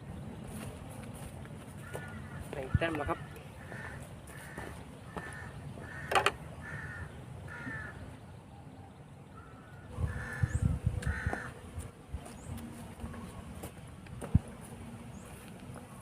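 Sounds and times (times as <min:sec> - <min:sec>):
crows cawing: 0:01.7 - 0:08.1, 0:09.4 - 0:11.6.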